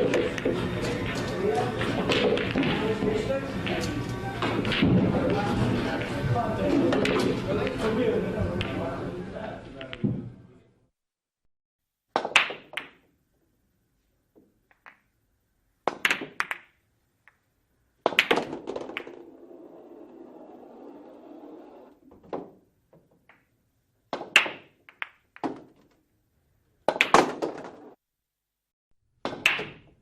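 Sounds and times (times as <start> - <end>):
billiard balls clacking: 0.0 - 6.1, 18.0 - 23.5
balls rolling rumble: 18.2 - 22.1.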